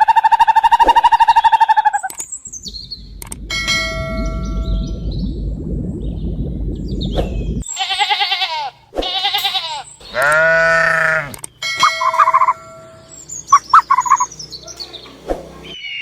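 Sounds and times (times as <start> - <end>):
farm animal bleating: 7.7 - 11.4
short high chirping calls: 11.8 - 15.0.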